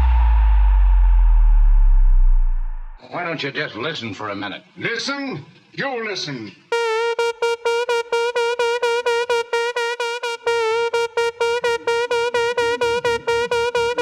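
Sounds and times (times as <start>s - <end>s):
low bass line: 0.0s - 3.0s, 8.6s - 14.0s
pulsing synth note: 0.0s - 3.0s, 6.8s - 14.0s.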